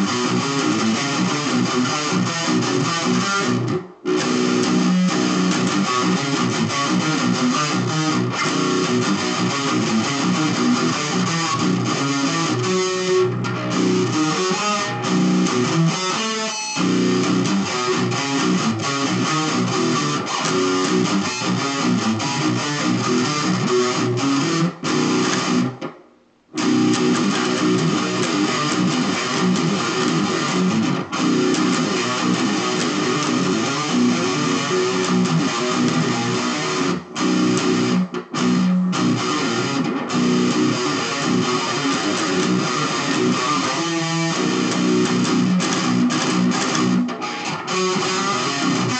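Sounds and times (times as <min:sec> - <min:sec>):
electric guitar riffs: 0:00.0 - 0:48.9.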